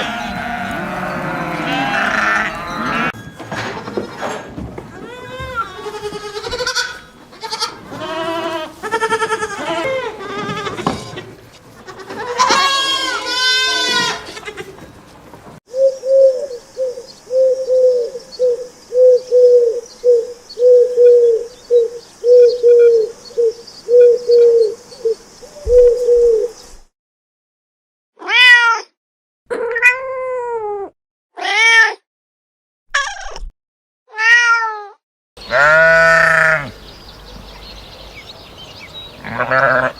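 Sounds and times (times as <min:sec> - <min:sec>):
animal bleating: 0:00.0 - 0:03.2, 0:03.8 - 0:14.8, 0:35.4 - 0:36.8, 0:39.2 - 0:39.9.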